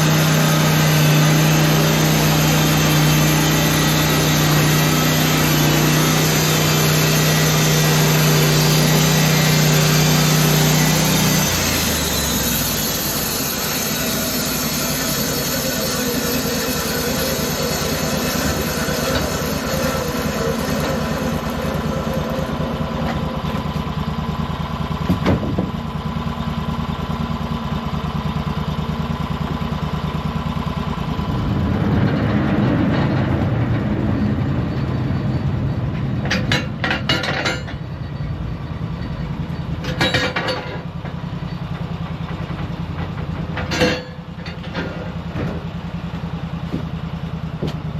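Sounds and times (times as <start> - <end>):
saw blade cutting log: 0.0 - 24.0
sawmill engine running: 0.0 - 47.9.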